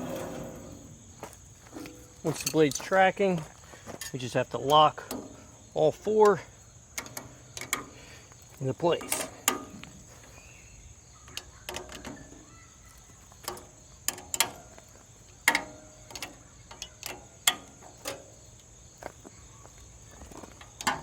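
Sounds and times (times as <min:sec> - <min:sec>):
crickets chirping: 0:00.0 - 0:21.0
wrench clicking on metal bolts: 0:07.0 - 0:07.9, 0:13.4 - 0:14.6, 0:15.4 - 0:18.3.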